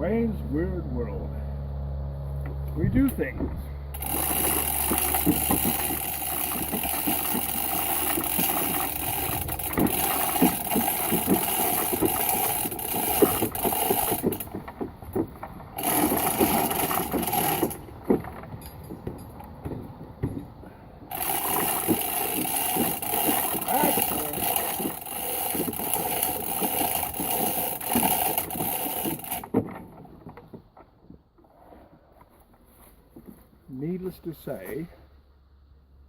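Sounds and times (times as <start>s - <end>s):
short knocks and clanks: 2.4s - 31.2s.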